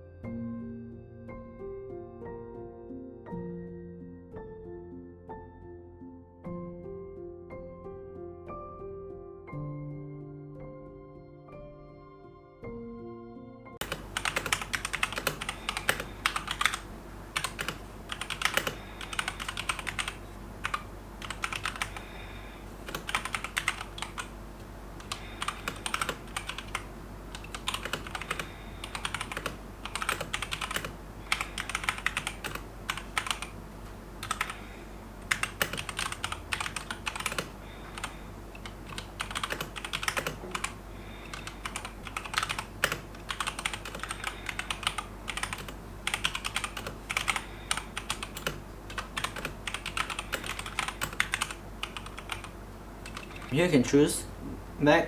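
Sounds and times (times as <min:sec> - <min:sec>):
mechanical keyboard typing: 0:13.8 - 0:22.1, 0:22.8 - 0:24.4, 0:25.0 - 0:33.6, 0:34.2 - 0:34.6, 0:35.3 - 0:53.6.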